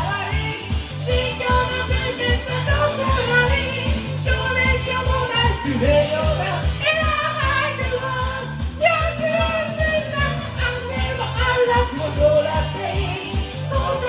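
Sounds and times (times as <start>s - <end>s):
high singing over pop backing track: 0.0s - 14.0s
pulsing bass beat: 0.0s - 14.0s.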